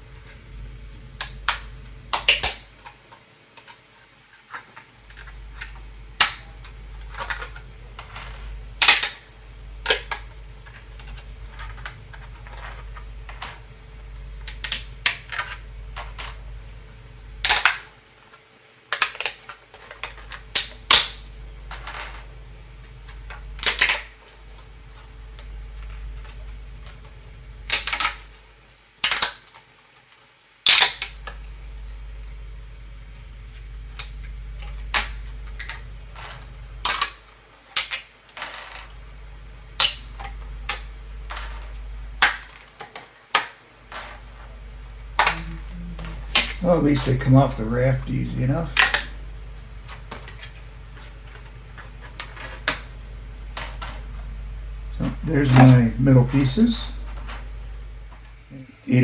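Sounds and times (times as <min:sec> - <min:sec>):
low steady hum: 0:00.0 - 0:59.0
plastic pieces snapping off: 0:01.2 - 0:03.0, 0:06.2 - 0:06.5, 0:08.8 - 0:09.2, 0:09.9 - 0:10.3, 0:14.4 - 0:16.4, 0:17.4 - 0:17.9, 0:18.9 - 0:21.2, 0:23.6 - 0:24.2, 0:27.7 - 0:28.3, 0:29.0 - 0:29.6, 0:30.6 - 0:31.4, 0:34.8 - 0:35.8, 0:36.8 - 0:37.2, 0:37.8 - 0:38.1, 0:39.8 - 0:41.6, 0:42.2 - 0:43.6, 0:45.2 - 0:45.7, 0:46.3 - 0:46.6, 0:48.8 - 0:49.2.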